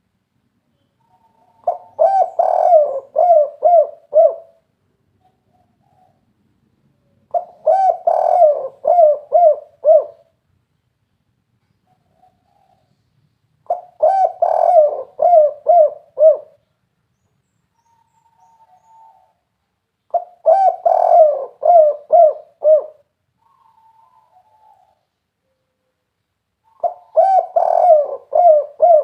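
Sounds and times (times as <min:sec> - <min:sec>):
dove cooing: 0:01.0 - 0:04.6, 0:05.2 - 0:06.3, 0:07.2 - 0:10.4, 0:11.8 - 0:13.0, 0:13.6 - 0:16.6, 0:17.9 - 0:19.5, 0:20.1 - 0:25.8, 0:26.6 - 0:29.0.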